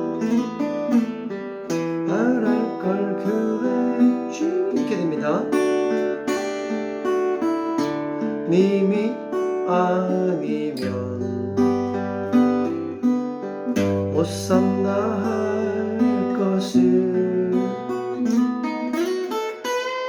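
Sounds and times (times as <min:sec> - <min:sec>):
acoustic guitar playing: 0:00.0 - 0:20.0.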